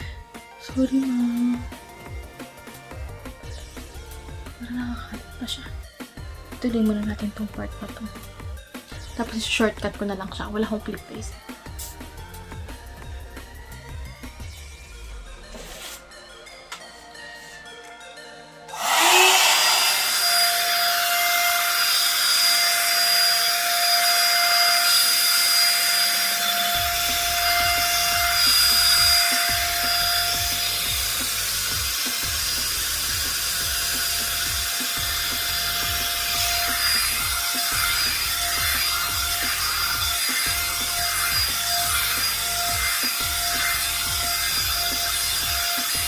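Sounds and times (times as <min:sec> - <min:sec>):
hair dryer blowing: 0:18.7 - 0:46.0.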